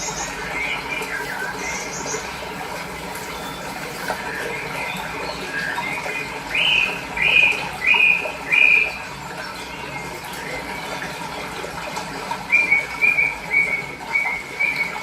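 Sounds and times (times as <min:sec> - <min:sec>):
birds chirping softly: 0:00.0 - 0:15.0
flowing water: 0:00.0 - 0:15.0
songbird whistling notes: 0:12.5 - 0:15.0.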